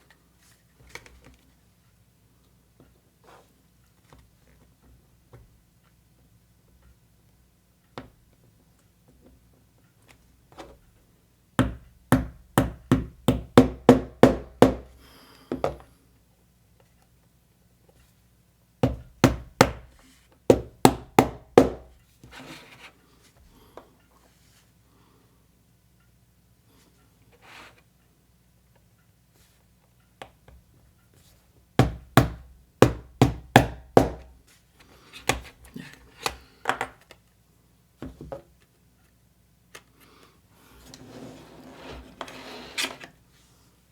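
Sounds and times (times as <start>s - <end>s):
small hammer tapping on wood: 11.6s - 14.9s, 18.8s - 19.9s, 31.8s - 34.4s.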